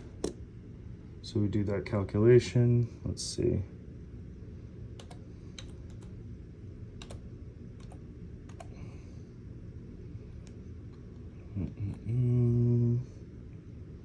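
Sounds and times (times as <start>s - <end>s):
steady low hum: 0.0s - 14.0s
keypad keys clicking: 5.0s - 6.1s, 7.0s - 7.2s, 7.8s - 8.7s.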